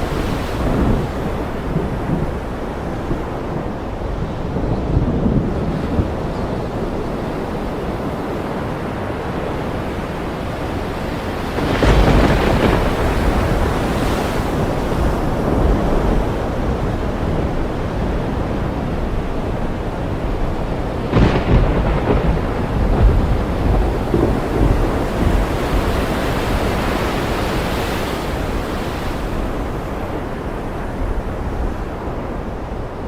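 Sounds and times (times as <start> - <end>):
thunder rolling: 0.0 - 8.1, 11.2 - 27.7
ocean waves: 0.0 - 33.0
rain: 0.0 - 33.0.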